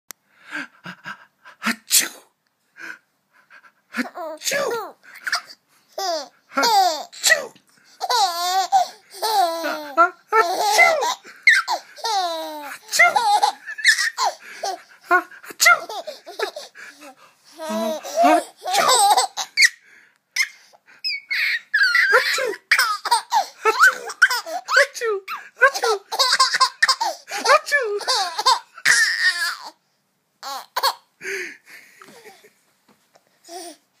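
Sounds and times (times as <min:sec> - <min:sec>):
baby gasping: 0:04.0 - 0:19.8, 0:21.8 - 0:28.6
baby laughing: 0:04.0 - 0:19.8, 0:20.4 - 0:29.8, 0:30.4 - 0:31.1.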